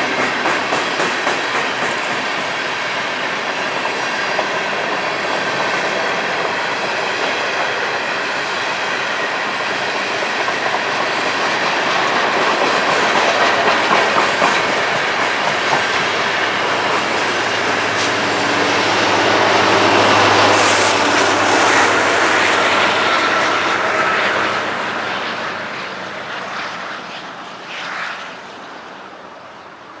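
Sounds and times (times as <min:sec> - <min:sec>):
train wheels clattering over rail joints: 0:00.0 - 0:08.5, 0:09.8 - 0:18.7.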